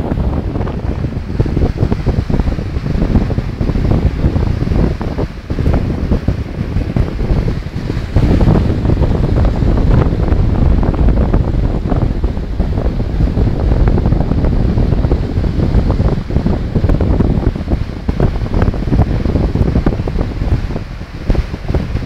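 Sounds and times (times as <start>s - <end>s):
waves washing onto beach: 0.0s - 22.0s
wind buffeting microphone: 0.0s - 22.0s.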